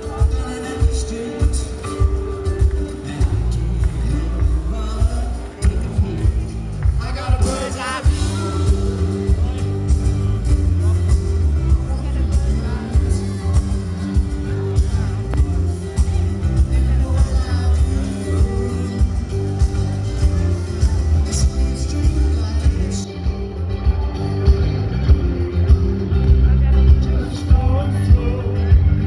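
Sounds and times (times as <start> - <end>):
person singing: 0.0 - 29.0
rock pop music: 0.0 - 29.0.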